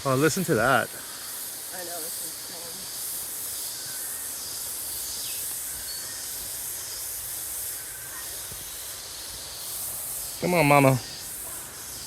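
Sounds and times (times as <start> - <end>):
cicadas droning: 0.0 - 12.0.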